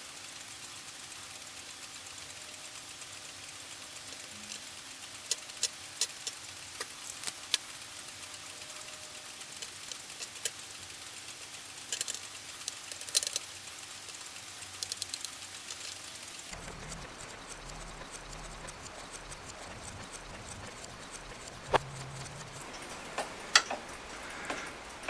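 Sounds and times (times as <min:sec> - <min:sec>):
steady low hiss: 0:00.0 - 0:25.0
clicks and taps of tools handled: 0:22.5 - 0:23.9.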